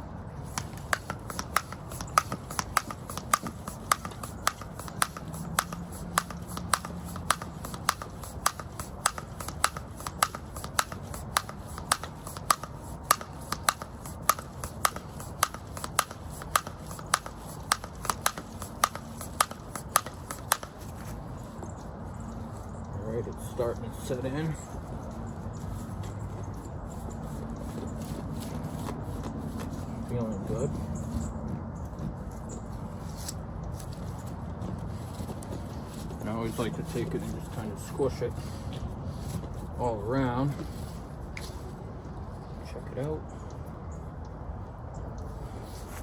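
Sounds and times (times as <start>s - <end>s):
tyre pump clicking: 0.4s - 22.4s.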